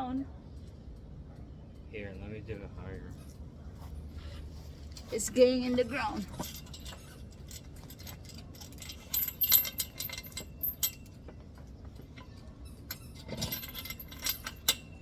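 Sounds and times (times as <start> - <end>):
metal hardware clinking: 4.9 - 15.0.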